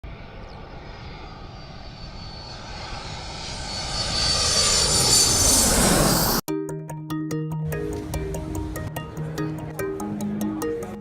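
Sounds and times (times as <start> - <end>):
jet engines with high whine: 0.0 - 6.5.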